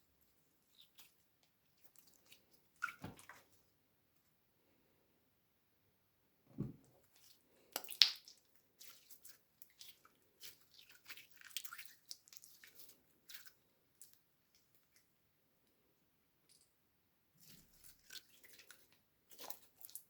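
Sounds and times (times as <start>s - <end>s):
slime squishing wet clicks: 7.7s - 13.5s.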